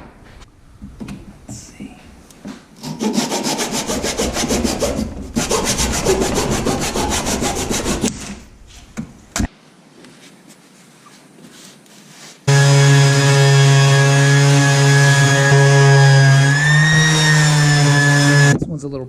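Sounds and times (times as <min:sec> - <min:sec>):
hand saw cutting wood: 0:02.8 - 0:08.5, 0:12.5 - 0:18.6.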